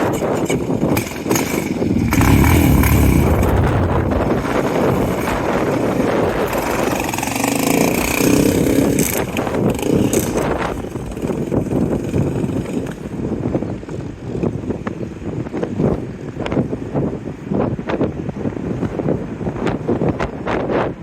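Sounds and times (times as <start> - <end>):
atv engine running: 0.0 - 13.4.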